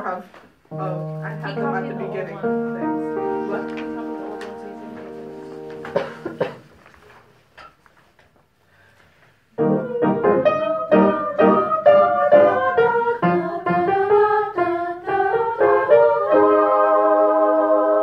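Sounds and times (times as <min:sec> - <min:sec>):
piano playing: 0:00.7 - 0:06.5, 0:09.6 - 0:18.0.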